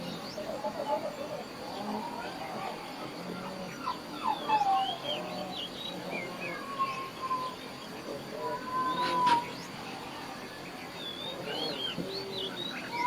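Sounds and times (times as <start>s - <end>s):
high animal chirps and squeaks: 8.6s - 9.5s.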